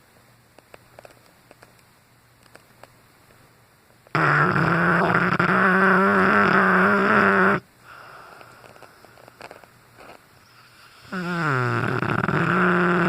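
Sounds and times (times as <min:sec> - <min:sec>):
dog snoring: 0:04.2 - 0:13.0.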